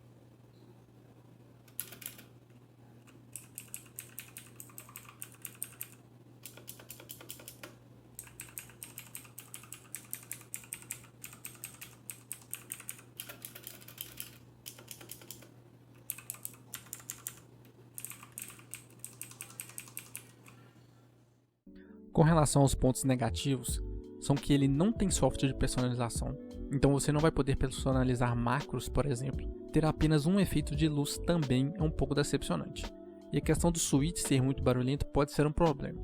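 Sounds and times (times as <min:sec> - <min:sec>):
mechanical keyboard key clicks: 0:01.7 - 0:02.2, 0:03.3 - 0:15.5.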